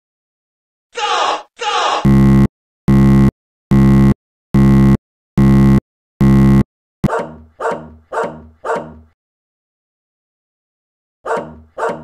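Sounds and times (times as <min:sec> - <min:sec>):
harsh buzzing alarm tone: 0:02.0 - 0:06.6
dog barking: 0:07.1 - 0:09.2, 0:11.2 - 0:12.0.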